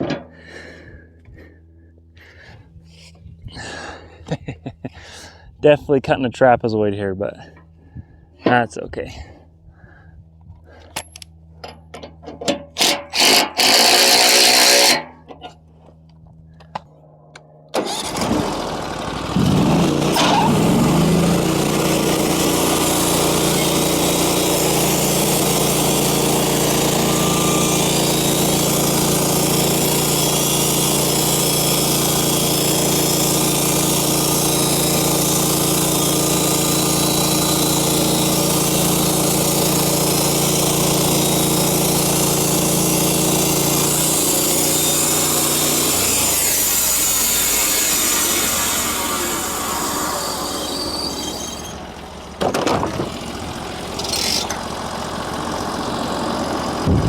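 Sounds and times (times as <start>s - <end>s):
sawmill engine running: 10.9s - 57.0s
loud rushing noise: 19.2s - 21.2s.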